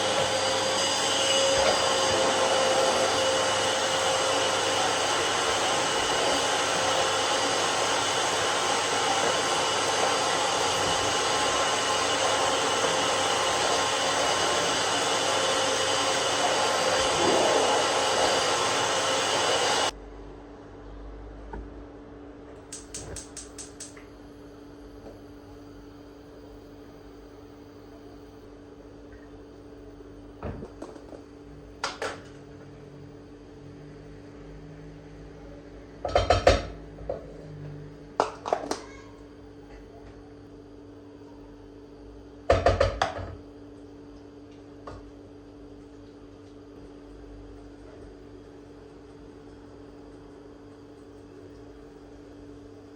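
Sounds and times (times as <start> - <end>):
appliance motor whining with air rush: 0.0 - 20.0.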